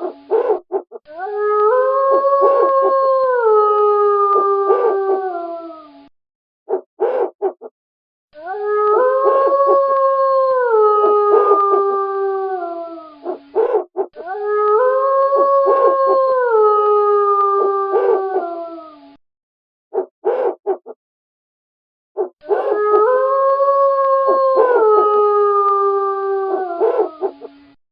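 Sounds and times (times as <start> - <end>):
wolf yips: 0.0 - 1.2, 6.7 - 7.7, 13.2 - 14.4, 18.0 - 18.4, 19.9 - 21.0, 22.2 - 22.8, 26.8 - 27.6
wolf howling: 0.0 - 6.0, 8.4 - 19.2, 22.2 - 27.7.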